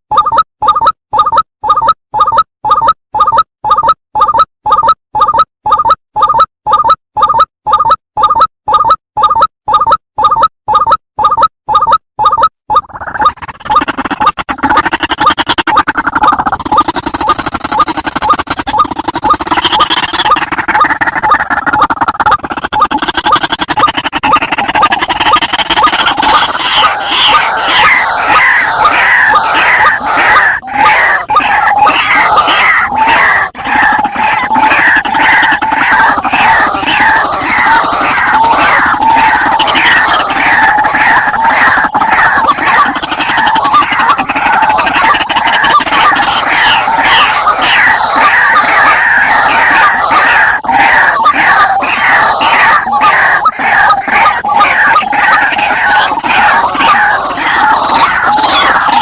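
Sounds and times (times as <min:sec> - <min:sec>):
birds calling harshly: 0:12.9 - 0:59.0.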